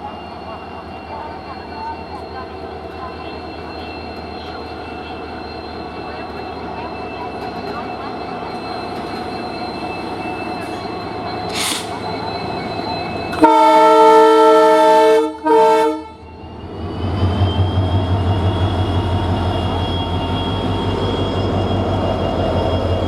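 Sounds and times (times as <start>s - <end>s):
diesel locomotive engine: 0.0s - 23.0s
locomotive horn blasts: 13.3s - 16.3s.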